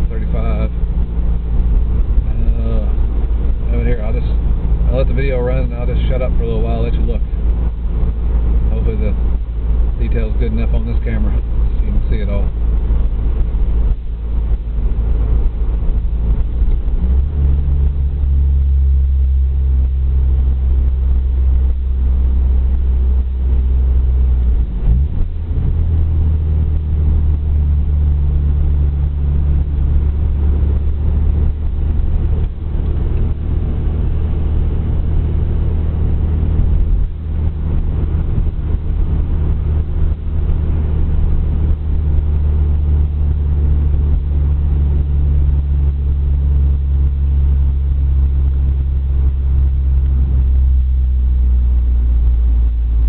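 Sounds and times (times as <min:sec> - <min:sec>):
car engine drone: 0:00.0 - 0:53.0
road noise: 0:00.0 - 0:53.0.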